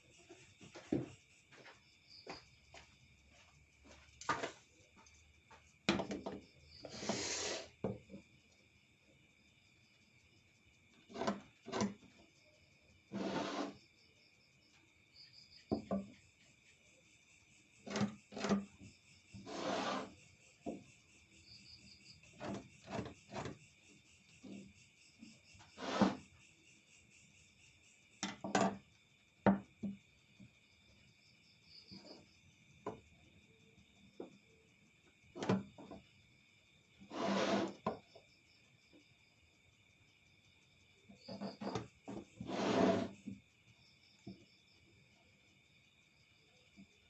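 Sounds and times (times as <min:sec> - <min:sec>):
crickets chirping: 0:00.0 - 0:47.0
wooden parts knocking: 0:05.9 - 0:06.4
wood scraping on wood: 0:05.9 - 0:08.2, 0:11.0 - 0:12.1, 0:13.1 - 0:13.8, 0:17.8 - 0:20.2, 0:22.3 - 0:23.6, 0:25.6 - 0:26.3, 0:37.0 - 0:38.0, 0:41.3 - 0:43.4
short hissing scrape: 0:06.8 - 0:07.8, 0:13.1 - 0:13.8, 0:19.4 - 0:20.2, 0:25.8 - 0:26.2, 0:37.1 - 0:37.8.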